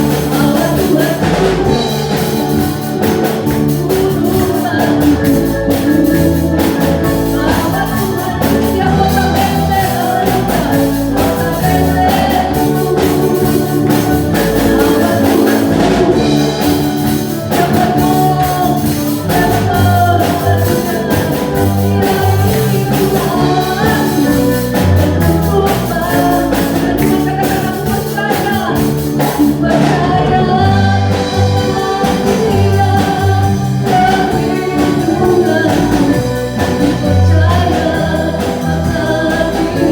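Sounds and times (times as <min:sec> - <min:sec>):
band with steady beat: 0:00.0 - 0:39.9
worship song singing: 0:00.0 - 0:39.9.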